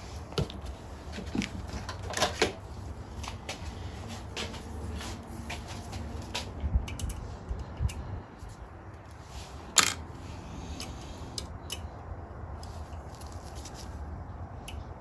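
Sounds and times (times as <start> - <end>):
light metal clicks: 6.3 - 8.0.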